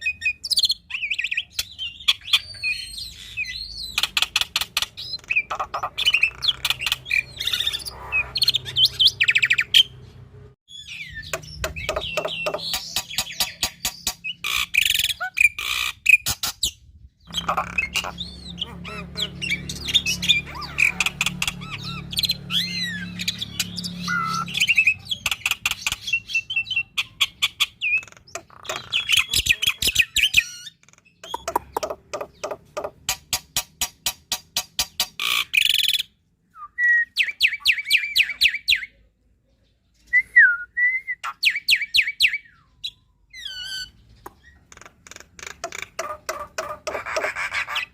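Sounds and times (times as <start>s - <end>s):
bird singing varied song: 0.0s - 47.9s.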